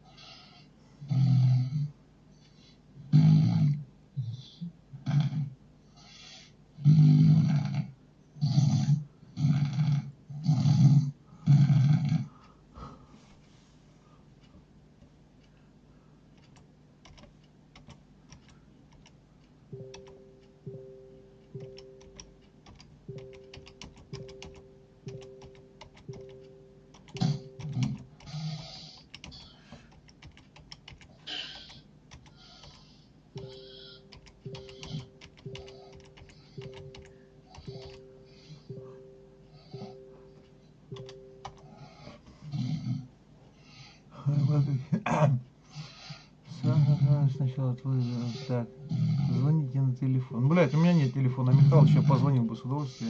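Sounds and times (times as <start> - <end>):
breathy bursts: 27.1 - 30.0, 31.1 - 40.3, 45.6 - 49.7, 50.6 - 53.0.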